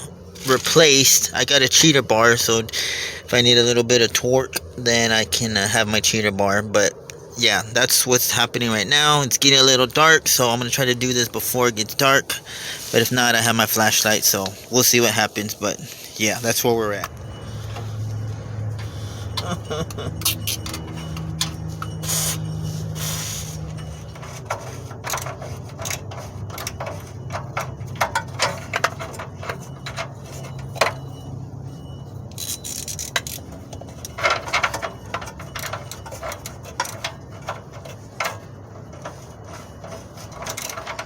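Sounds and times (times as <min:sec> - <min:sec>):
hand tools clicking and scraping: 0:00.0 - 0:41.0
low hum: 0:08.4 - 0:41.0.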